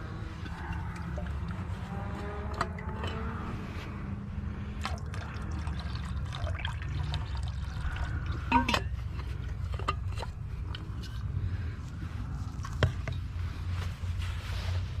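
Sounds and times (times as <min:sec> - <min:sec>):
low steady rumble: 0:00.0 - 0:15.0
water pouring into a pot: 0:04.8 - 0:08.8.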